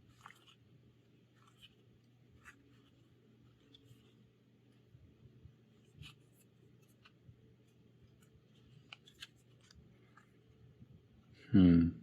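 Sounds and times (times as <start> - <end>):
paper cards clicking and rustling: 0.0 - 0.6, 1.3 - 4.2, 5.8 - 10.6.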